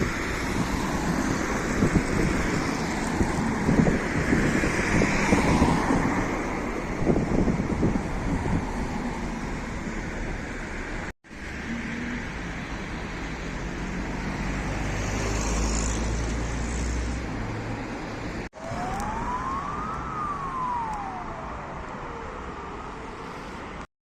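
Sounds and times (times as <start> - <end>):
road traffic noise: 0.0 - 23.9
vehicle engine rumbling: 6.3 - 23.8
ambulance siren wail: 18.6 - 23.3.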